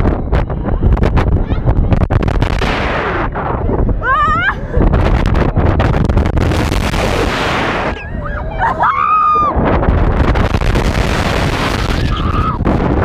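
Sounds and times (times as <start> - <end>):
wind buffeting microphone: 0.0 - 13.0
riders screaming: 11.8 - 12.6.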